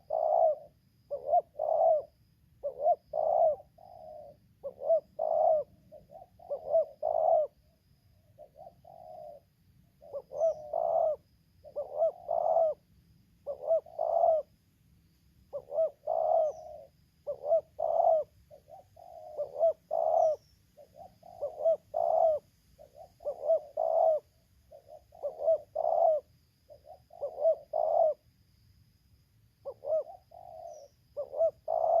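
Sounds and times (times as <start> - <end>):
doves cooing: 0.0 - 7.7, 8.4 - 12.8, 13.4 - 14.6, 15.5 - 28.3, 29.6 - 32.0.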